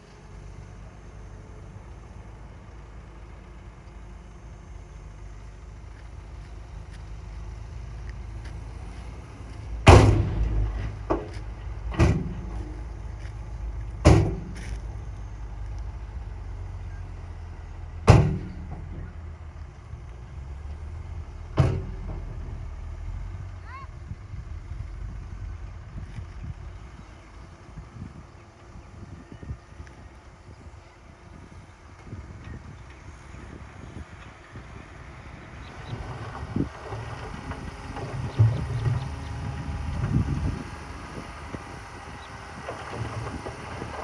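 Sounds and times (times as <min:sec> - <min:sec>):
diesel machinery rumbling: 0:00.0 - 0:44.0
loud bangs: 0:09.7 - 0:13.0, 0:18.0 - 0:19.2.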